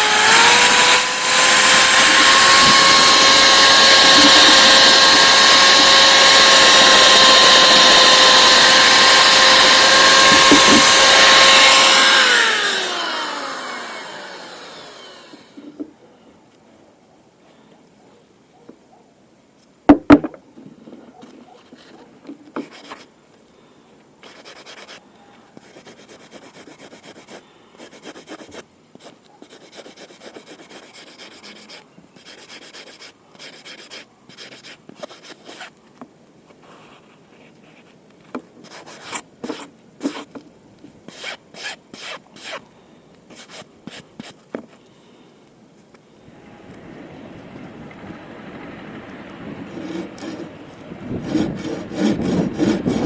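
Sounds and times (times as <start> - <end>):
rubbing and scraping on workpiece: 0.0 - 12.8, 38.6 - 40.4, 49.7 - 53.0.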